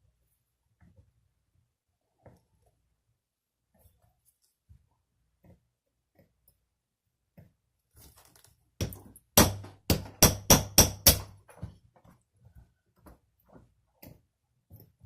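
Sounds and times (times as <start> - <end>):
small hammer tapping metal punch: 8.8 - 11.4.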